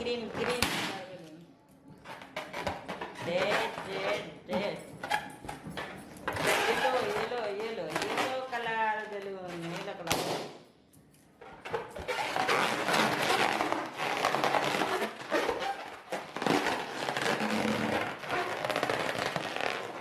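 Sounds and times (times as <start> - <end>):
balloons crackling and crinkling: 0.0 - 10.6, 11.3 - 20.0
balloon bursting: 0.3 - 1.2, 10.0 - 10.6, 12.0 - 20.0.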